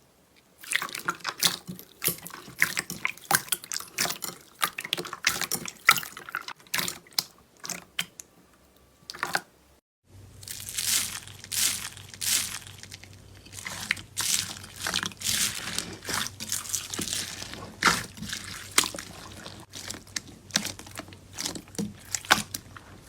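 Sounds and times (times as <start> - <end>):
slime crunching: 10.4 - 23.0.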